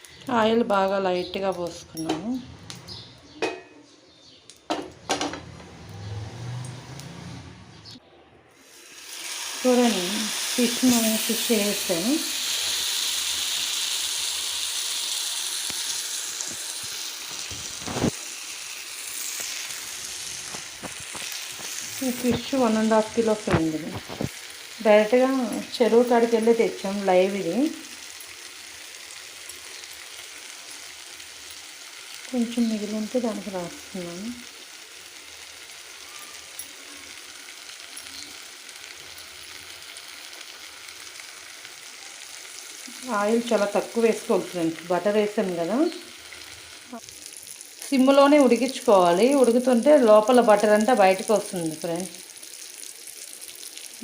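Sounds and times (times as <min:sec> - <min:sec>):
fish sizzling on a griddle: 0:08.6 - 0:54.0
oil popping: 0:19.0 - 0:24.4.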